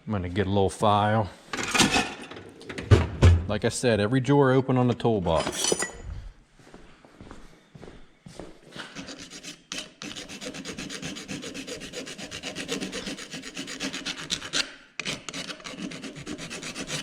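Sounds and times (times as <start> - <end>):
hand file rasping on metal: 8.8 - 17.0.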